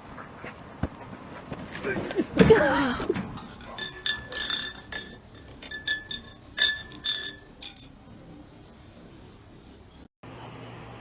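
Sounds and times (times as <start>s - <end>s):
light glassy clinks: 3.4s - 8.0s.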